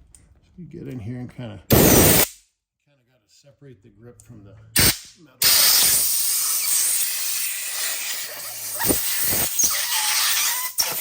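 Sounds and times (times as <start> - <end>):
compressed air hissing: 1.7 - 2.3, 4.8 - 10.8.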